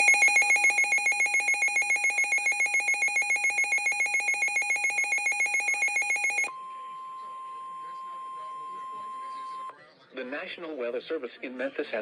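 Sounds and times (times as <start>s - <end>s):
pulsing electronic alarm tone: 0.0s - 6.5s.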